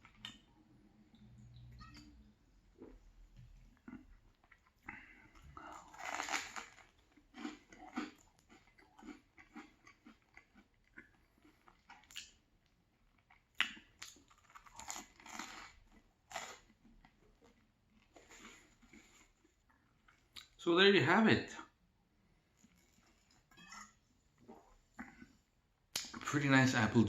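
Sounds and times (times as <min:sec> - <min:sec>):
crusty bread crunching while chewing: 0:03.8 - 0:20.5.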